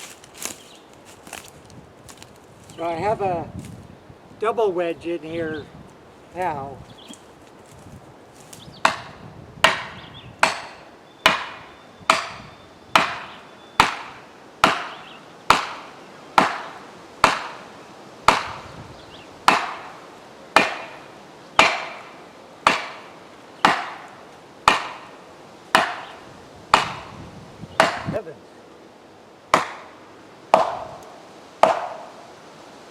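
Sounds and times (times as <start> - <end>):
hammer striking felling wedges: 8.8 - 17.7, 18.3 - 18.6, 19.5 - 20.0, 20.6 - 27.1, 27.8 - 28.2, 29.5 - 31.0, 31.6 - 32.1.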